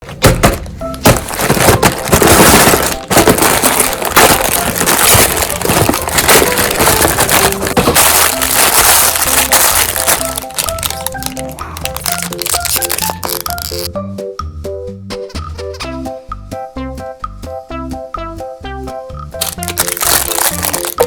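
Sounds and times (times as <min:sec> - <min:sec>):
background music: 0:00.0 - 0:21.0
meat grinder crunching: 0:01.2 - 0:13.9, 0:19.4 - 0:21.0.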